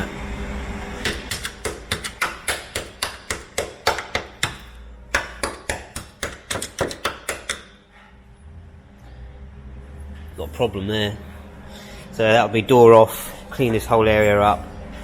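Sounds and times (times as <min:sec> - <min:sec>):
hand tool tapping on rusted steel: 0:01.0 - 0:07.7.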